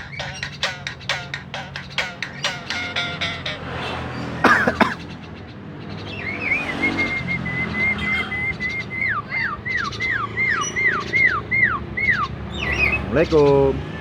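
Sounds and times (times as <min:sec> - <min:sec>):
myna whistling: 0:06.1 - 0:13.0.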